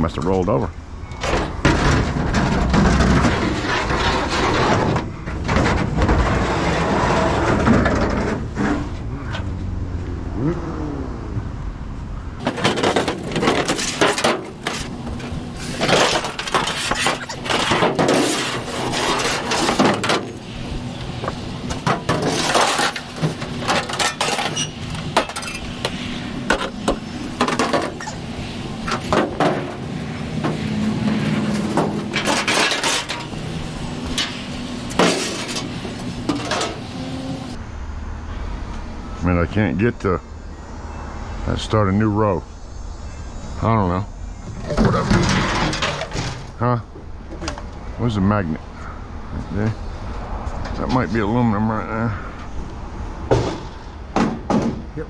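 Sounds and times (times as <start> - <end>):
scrap metal clanking: 12.4 - 37.6.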